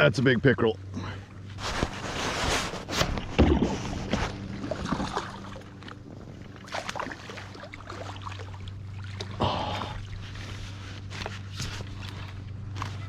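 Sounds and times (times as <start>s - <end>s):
steady low hum: 0.0s - 13.0s
fish splashing in water: 3.3s - 13.0s.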